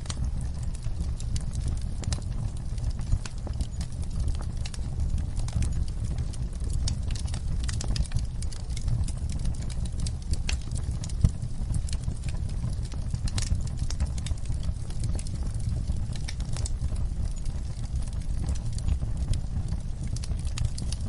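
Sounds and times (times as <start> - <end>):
low rumble of burning: 0.0 - 21.0
sharp pops of fire: 0.0 - 21.0
wood fire crackling: 0.0 - 21.0.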